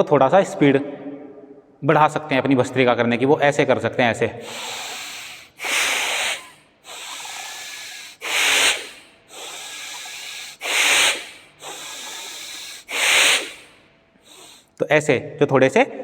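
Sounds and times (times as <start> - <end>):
man breathing forcefully: 4.4 - 14.8.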